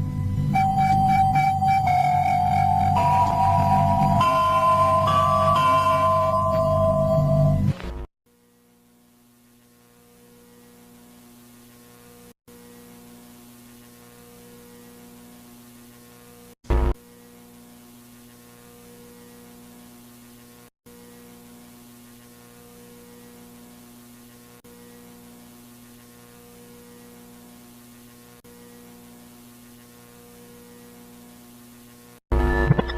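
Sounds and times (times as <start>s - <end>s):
electrical hum: 9.3s - 32.9s.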